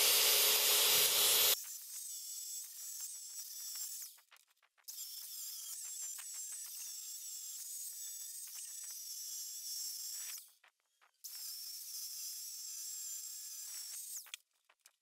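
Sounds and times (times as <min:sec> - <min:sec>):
gas torch flame hissing: 0:00.0 - 0:01.6.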